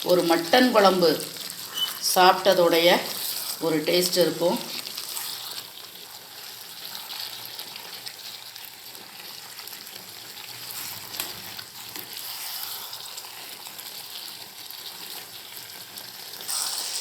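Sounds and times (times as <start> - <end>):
gravy sizzling in a pan: 0.0 - 17.0.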